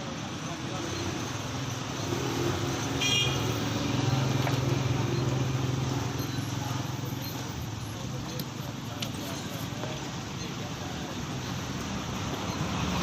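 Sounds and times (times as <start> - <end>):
car horn toot: 3.0 - 3.6.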